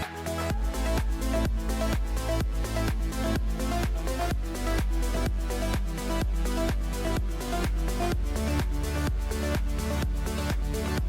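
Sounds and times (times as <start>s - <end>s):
deep bass line: 0.0s - 11.0s
electronic music with steady beat: 0.0s - 11.0s.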